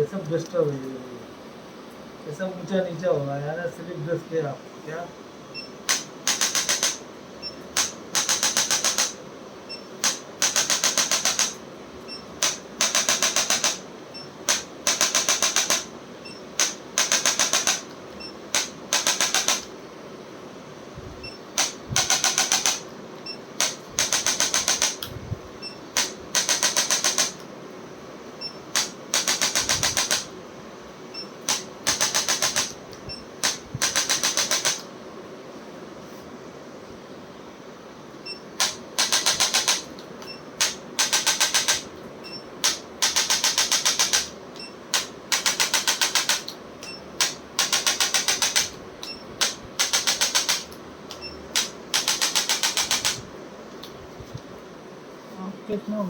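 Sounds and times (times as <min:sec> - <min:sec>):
adjusting instrument rapid clicks: 0:05.9 - 0:07.0, 0:07.7 - 0:09.2, 0:10.0 - 0:11.6, 0:12.4 - 0:13.8, 0:14.5 - 0:15.9, 0:16.6 - 0:19.7, 0:21.6 - 0:22.9, 0:23.6 - 0:25.1, 0:26.0 - 0:27.4, 0:28.7 - 0:30.3, 0:31.4 - 0:32.8, 0:33.4 - 0:34.9, 0:38.6 - 0:40.0, 0:40.6 - 0:42.0, 0:42.6 - 0:53.2.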